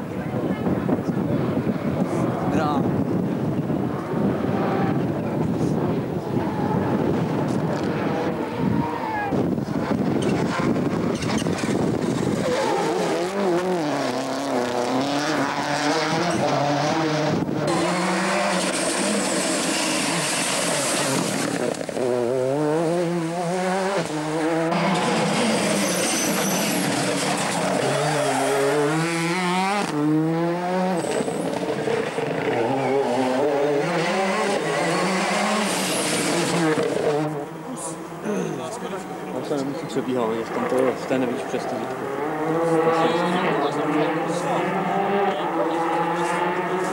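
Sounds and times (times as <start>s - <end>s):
rally car engine at full throttle: 0.0s - 46.9s.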